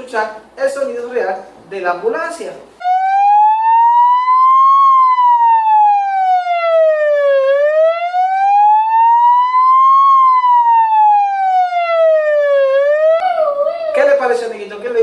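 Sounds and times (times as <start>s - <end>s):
ambulance siren wailing: 2.8s - 14.0s.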